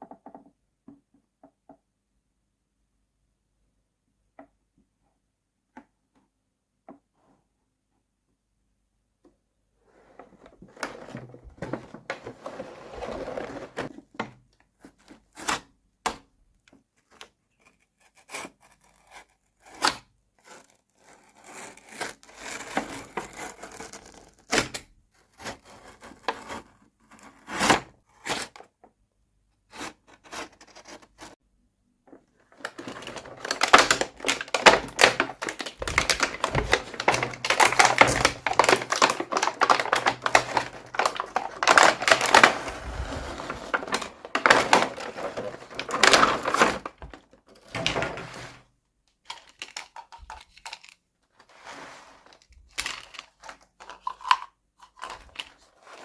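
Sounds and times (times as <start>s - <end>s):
plastic packaging crinkling: 32.5s - 48.5s, 52.3s - 54.4s
plastic toy pieces clicking: 49.2s - 51.0s, 52.6s - 55.5s.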